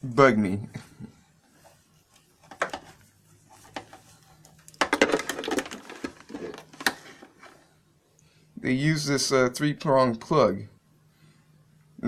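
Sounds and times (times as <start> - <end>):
faint steady hum: 0.0 - 12.0
plastic clicks and knocks: 4.7 - 7.4.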